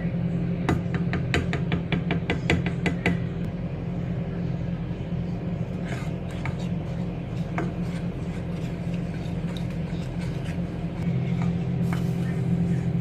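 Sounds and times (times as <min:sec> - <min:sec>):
appliance humming: 0:00.0 - 0:13.0.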